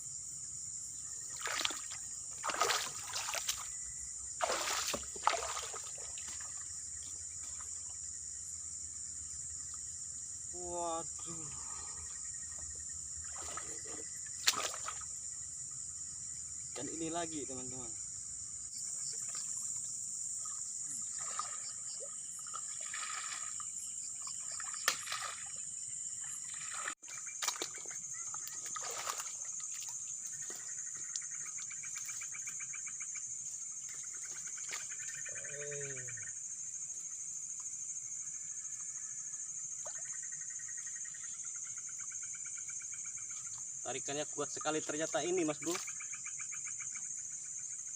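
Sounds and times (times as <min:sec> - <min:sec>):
night insects buzzing: 0:00.0 - 0:47.9
water splashing and sloshing: 0:01.0 - 0:08.5, 0:11.5 - 0:15.4, 0:18.8 - 0:35.2.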